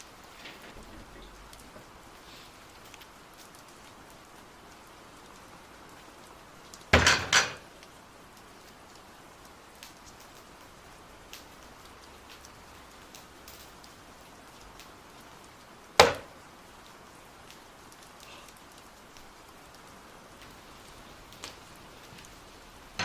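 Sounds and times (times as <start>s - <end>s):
faint crackling hiss: 0.0s - 23.0s
small ticks: 1.2s - 6.9s, 7.8s - 15.8s, 16.6s - 22.4s
loud clatter of knocks: 7.0s - 7.7s, 16.0s - 16.3s.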